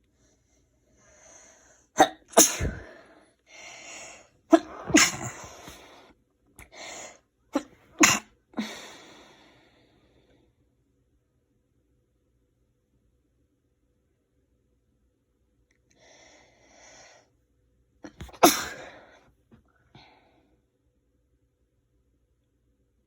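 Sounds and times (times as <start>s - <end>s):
person sneezing: 2.0s - 3.1s, 3.9s - 6.0s, 6.6s - 9.2s, 18.1s - 19.1s.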